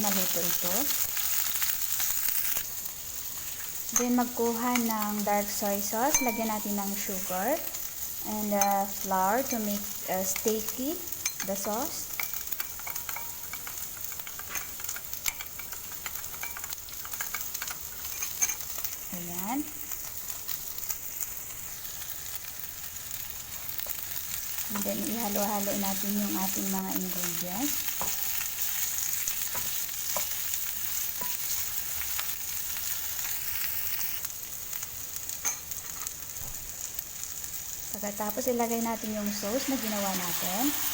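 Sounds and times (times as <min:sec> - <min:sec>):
food sizzling in hot oil: 0:00.0 - 0:40.9
utensil clicking against pan: 0:10.3 - 0:18.6.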